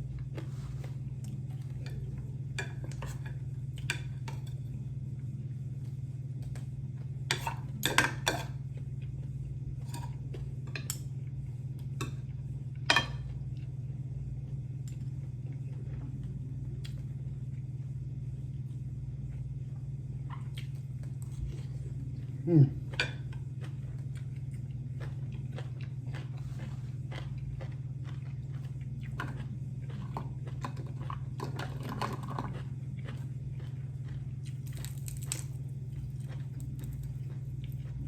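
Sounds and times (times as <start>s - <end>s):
steady low hum: 0.0s - 38.0s
cutlery clinking on dishes: 12.9s - 13.3s.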